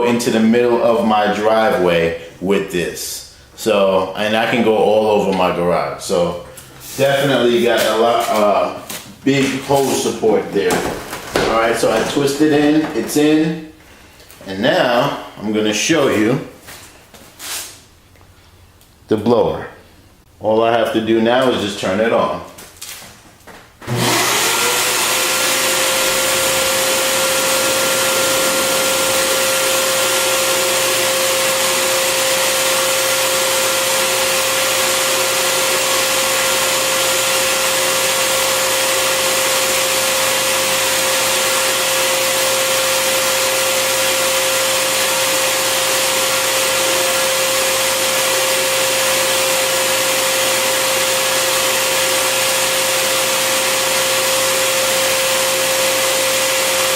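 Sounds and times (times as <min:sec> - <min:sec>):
vacuum motor whine: 0:23.8 - 0:56.9.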